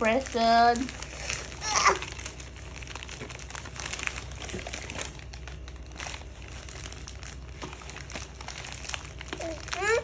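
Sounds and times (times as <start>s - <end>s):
wrapping paper crinkling: 0.0s - 10.0s.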